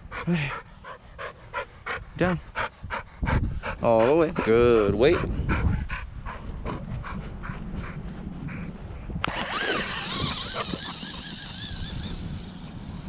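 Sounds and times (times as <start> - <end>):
dog panting: 0.0 - 11.6
click: 9.2 - 9.4
electric motor whining: 9.2 - 13.0.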